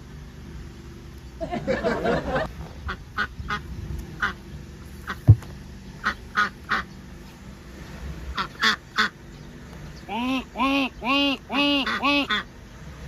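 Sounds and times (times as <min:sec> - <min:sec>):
duck quacking: 0:06.0 - 0:06.9, 0:08.4 - 0:09.2, 0:10.1 - 0:12.5.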